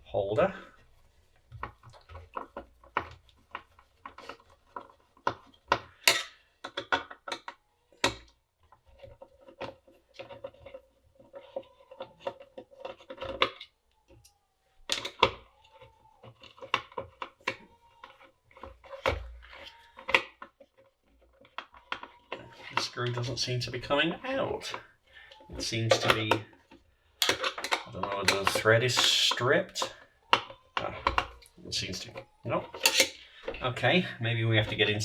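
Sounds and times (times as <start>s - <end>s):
clicks scrapes and knocks of handling: 0.6s - 35.0s
screwdriver on screw in metal case: 1.7s - 13.7s, 32.1s - 33.2s.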